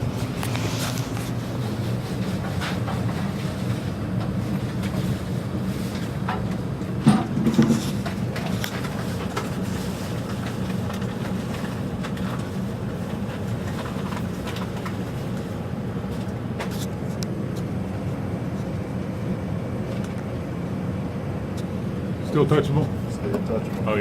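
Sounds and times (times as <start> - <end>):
gas water heaters rumbling: 0.0 - 24.0
knock and clatter: 7.0 - 8.5.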